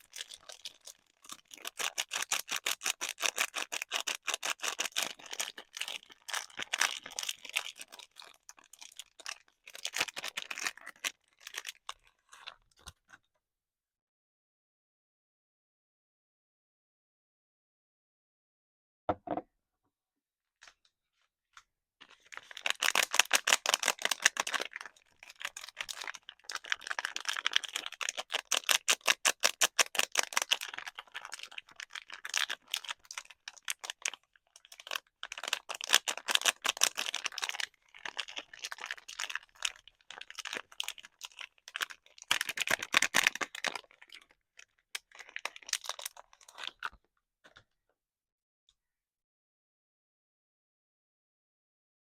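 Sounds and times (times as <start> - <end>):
packaging crackling: 22.3 - 44.3, 45.0 - 46.9.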